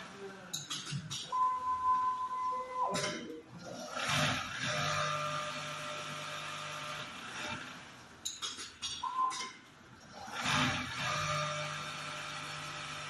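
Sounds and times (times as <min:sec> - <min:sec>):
sharp clicks and knocks: 0:00.6 - 0:01.3, 0:08.2 - 0:09.7
sewing machine motor hum: 0:03.6 - 0:08.0, 0:10.1 - 0:13.0.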